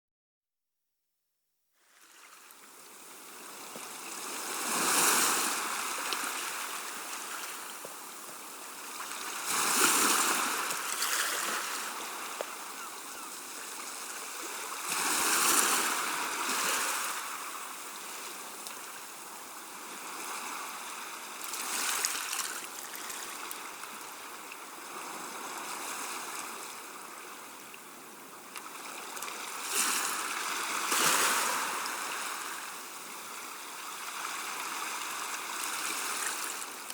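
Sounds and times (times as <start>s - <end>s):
sea waves washing onto shore: 2.0s - 36.9s.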